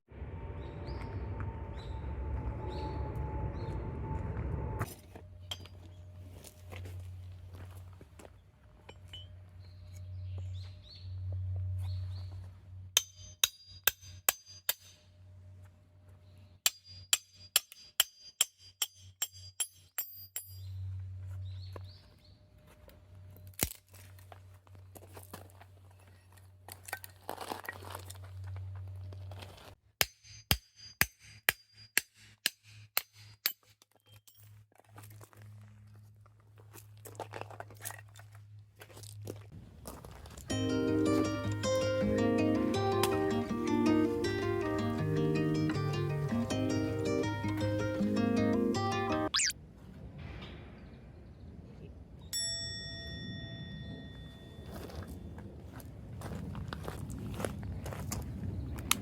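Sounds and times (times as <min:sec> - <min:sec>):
low steady drone: 0:00.1 - 0:07.5
metal-on-metal hammer strikes: 0:13.0 - 0:15.1, 0:16.6 - 0:20.7, 0:30.0 - 0:33.7.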